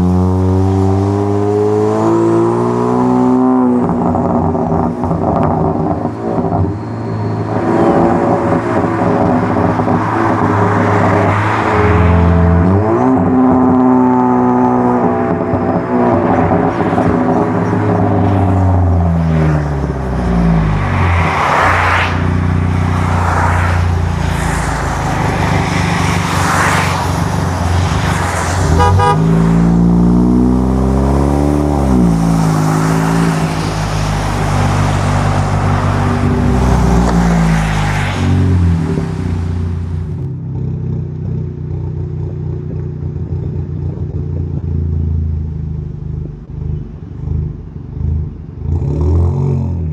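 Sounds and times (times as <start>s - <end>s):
car engine accelerating: 0.0s - 41.0s
rushing noise: 16.2s - 40.3s.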